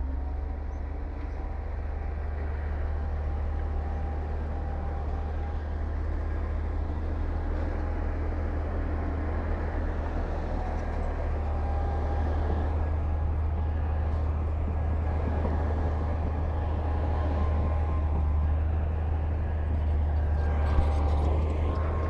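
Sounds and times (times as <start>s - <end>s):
heavy diesel machine rumbling: 0.0s - 22.0s.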